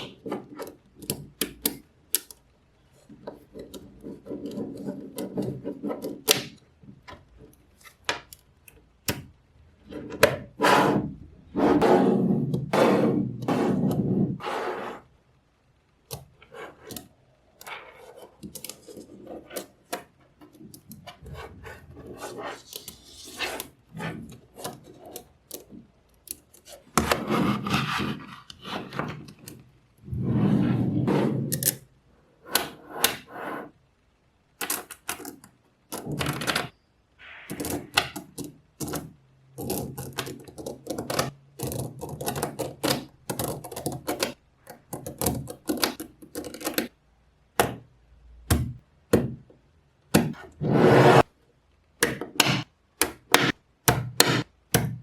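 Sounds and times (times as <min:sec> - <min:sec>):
balls rattling and sliding: 0:02.8 - 0:08.1, 0:09.8 - 0:15.2, 0:16.3 - 0:33.8, 0:50.3 - 0:51.4.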